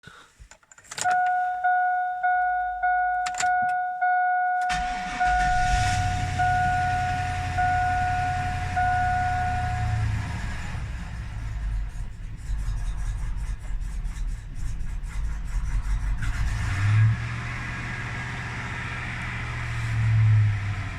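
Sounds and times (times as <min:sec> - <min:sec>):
dashboard warning chime: 0:00.9 - 0:10.6
engine cranking and idling roughly: 0:04.7 - 0:19.9.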